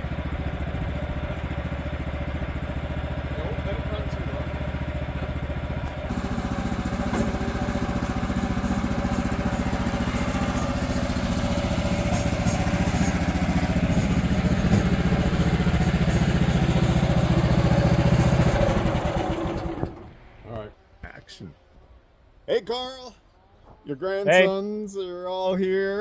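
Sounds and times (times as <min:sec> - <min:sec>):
engine idling: 0:00.0 - 0:20.2.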